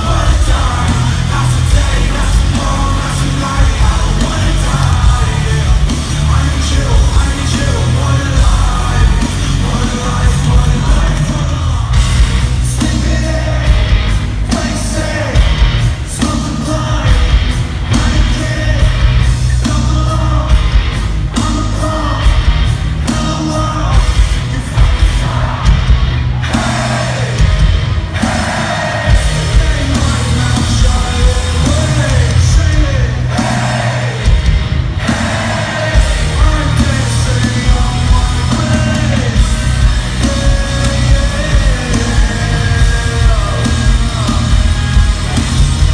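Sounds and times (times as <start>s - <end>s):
live rock band with singer: 0.0s - 45.9s.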